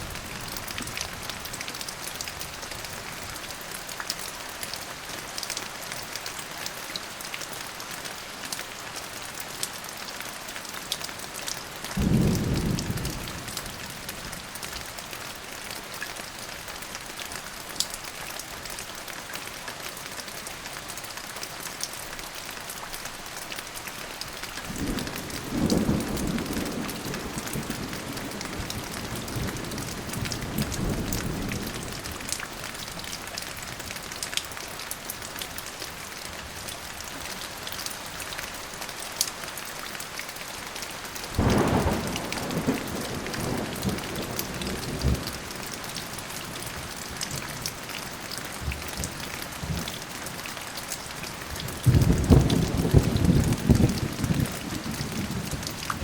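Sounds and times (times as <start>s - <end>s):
raindrops ticking: 20.6s - 56.0s
thunder rumbling: 41.4s - 45.3s, 51.6s - 55.7s
rain hissing: 41.4s - 46.0s.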